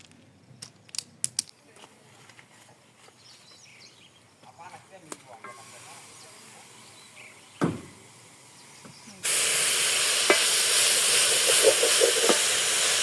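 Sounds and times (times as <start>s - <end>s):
food sizzling in hot oil: 5.5s - 13.0s
single knock: 7.6s - 8.0s.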